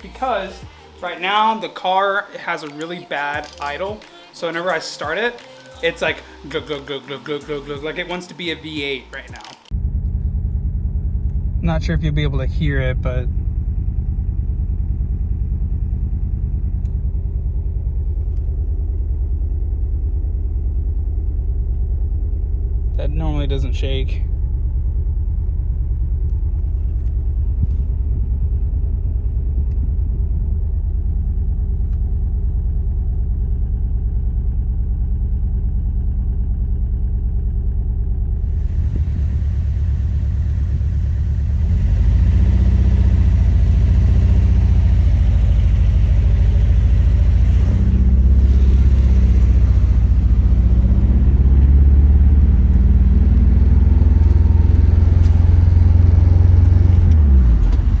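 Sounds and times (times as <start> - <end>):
engine idling roughly: 9.7 - 50.8.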